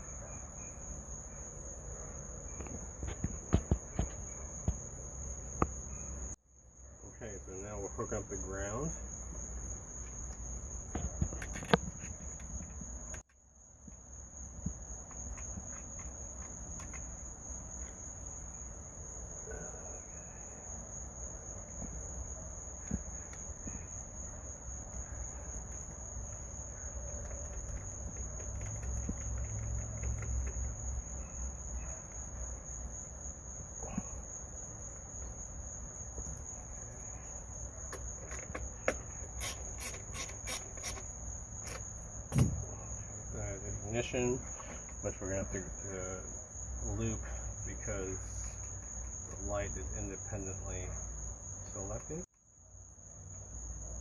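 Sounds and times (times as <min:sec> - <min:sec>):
insect trilling: 0:14.4 - 0:52.2.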